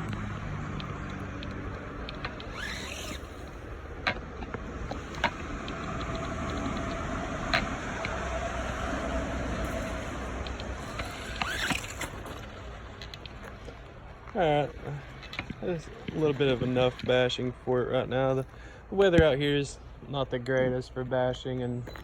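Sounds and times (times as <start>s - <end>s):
sharp knocks over bumps: 0.0s - 8.9s
electric motor whining: 0.0s - 17.4s
tyre and ground noise: 0.0s - 22.0s.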